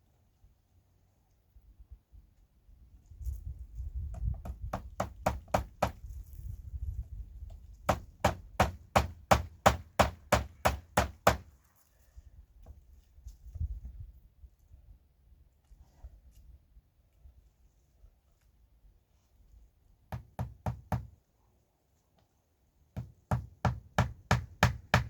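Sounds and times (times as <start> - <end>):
hammer driving nails into wood: 4.4 - 6.0, 7.9 - 11.5, 23.0 - 25.0.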